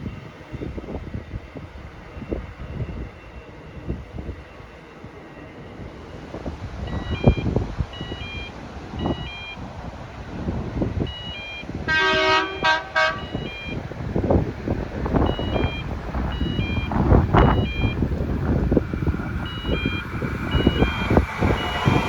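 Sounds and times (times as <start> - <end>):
wind buffeting microphone: 0.0 - 22.0
two-note electronic warning beep: 11.1 - 13.8, 15.2 - 18.0, 19.4 - 22.0
horn short blasts: 11.9 - 13.5.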